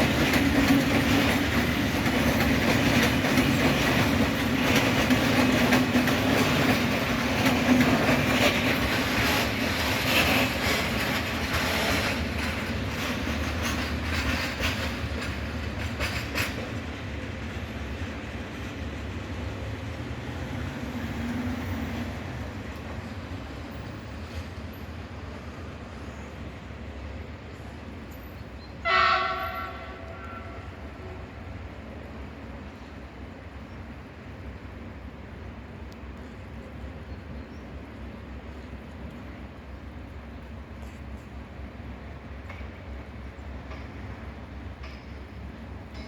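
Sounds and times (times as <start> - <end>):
wheels clattering over rail joints: 0.0 - 17.2
freight train rolling past: 0.0 - 46.0.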